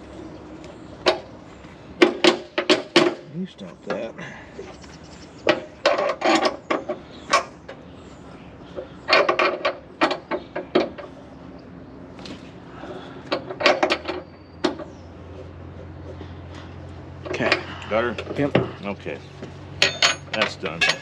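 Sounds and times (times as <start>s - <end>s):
metal clanks and knocks: 2.0s - 4.1s, 5.4s - 7.8s, 8.8s - 11.2s, 13.3s - 15.0s, 17.2s - 19.0s, 19.7s - 21.0s.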